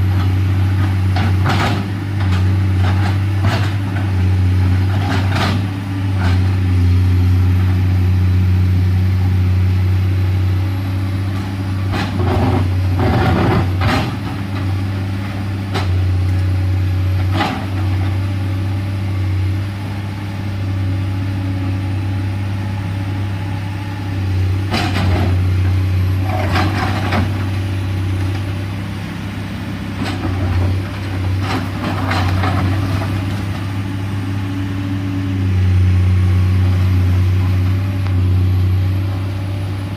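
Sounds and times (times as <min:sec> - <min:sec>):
excavator diesel engine: 0:00.0 - 0:39.9
excavator bucket knocking and scraping: 0:01.0 - 0:04.2, 0:11.9 - 0:14.8, 0:24.6 - 0:25.5, 0:26.2 - 0:28.5, 0:30.0 - 0:33.9.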